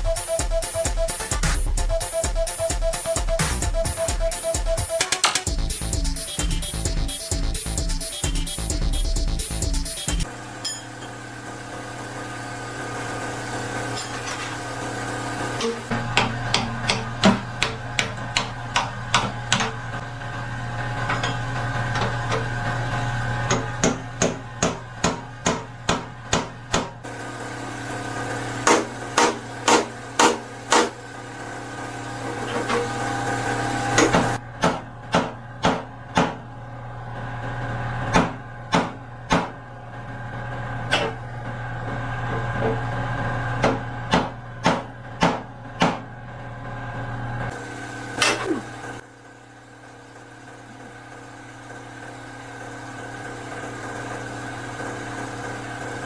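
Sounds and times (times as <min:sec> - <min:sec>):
hammer striking sheet metal: 0:15.6 - 0:20.0, 0:23.5 - 0:27.0, 0:34.0 - 0:36.4
steady low hum: 0:15.6 - 0:27.1.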